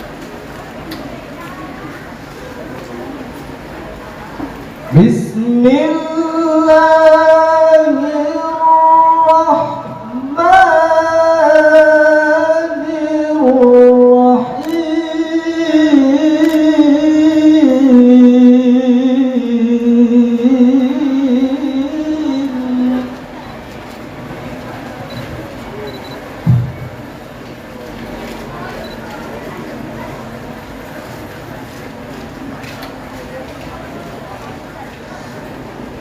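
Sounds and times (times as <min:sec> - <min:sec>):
man reciting in melodic chant: 0:04.8 - 0:23.3.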